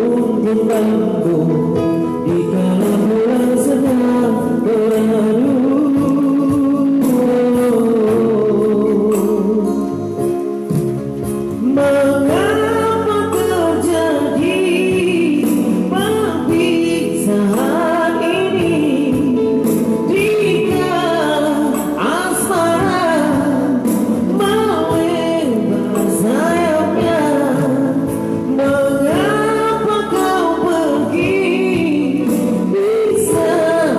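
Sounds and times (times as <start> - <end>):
instrumental accompaniment: 0.0 - 33.9
high singing voice: 11.6 - 33.9.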